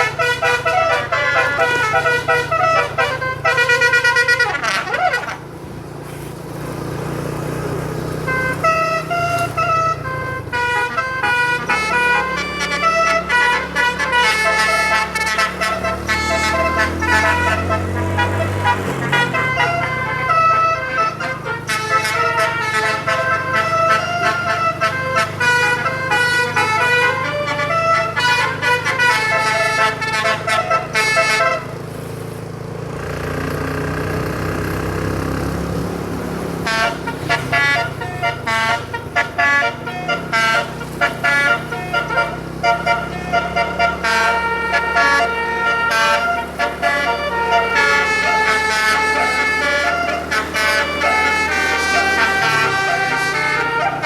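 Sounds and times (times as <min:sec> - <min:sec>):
multi-tone musical bus horn: 0:00.0 - 0:54.0.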